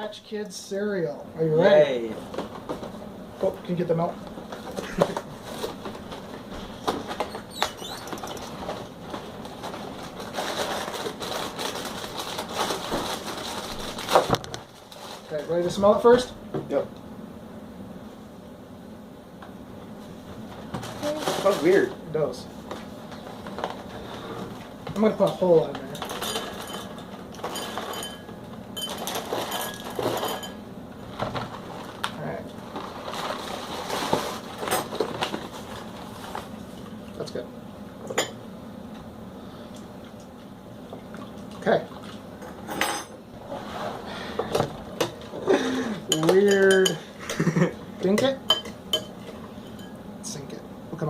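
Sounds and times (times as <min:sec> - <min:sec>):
dishes clinking: 0:25.9 - 0:30.6, 0:46.1 - 0:47.5, 0:48.1 - 0:50.0.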